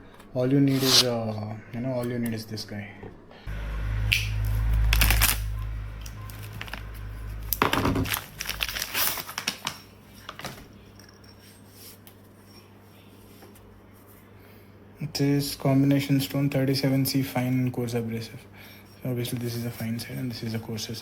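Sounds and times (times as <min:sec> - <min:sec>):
low handling rumble: 0:03.5 - 0:08.9.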